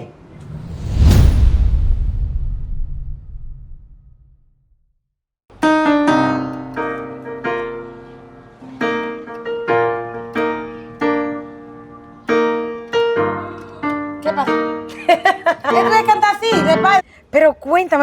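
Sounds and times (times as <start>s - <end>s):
piano chords: 5.5s - 17.0s.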